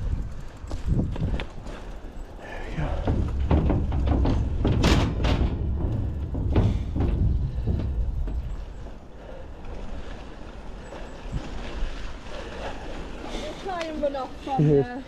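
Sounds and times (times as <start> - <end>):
mountain bike rolling on trail: 0.0 - 15.0
bike frame knocks: 2.7 - 8.9.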